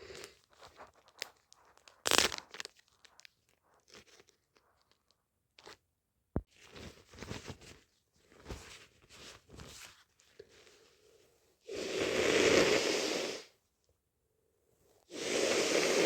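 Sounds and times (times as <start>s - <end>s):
rustles and crinkles: 0.0s - 11.0s
air rushing through congested nose: 11.7s - 13.5s, 15.1s - 16.0s.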